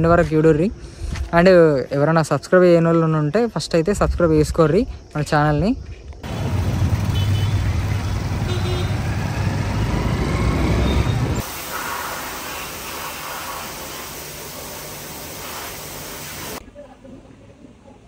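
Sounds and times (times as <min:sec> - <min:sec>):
vehicle engine and road noise: 0:06.1 - 0:16.6.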